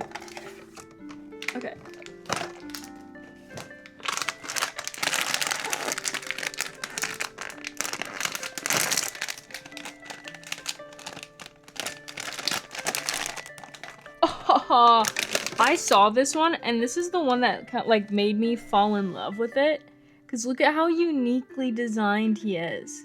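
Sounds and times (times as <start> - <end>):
packaging crinkling and tearing: 0.0 - 14.2, 14.9 - 16.4
background music: 0.0 - 23.0.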